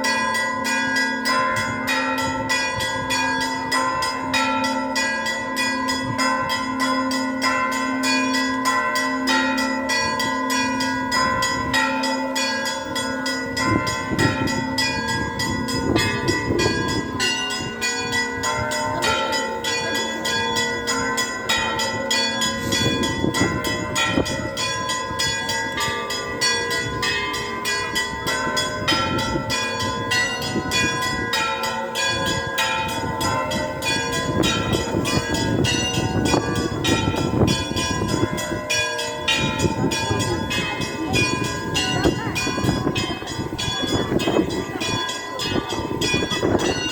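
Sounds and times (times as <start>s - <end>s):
large bells sustained tones: 0.0s - 46.9s
low bell pulsing: 0.0s - 46.9s
small church bells ringing quickly: 0.0s - 46.9s.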